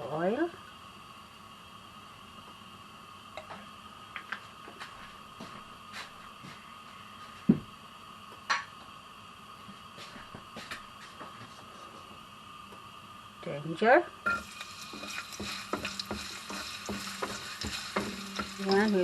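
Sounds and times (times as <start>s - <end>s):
utensils and containers clattering: 14.3s - 19.0s.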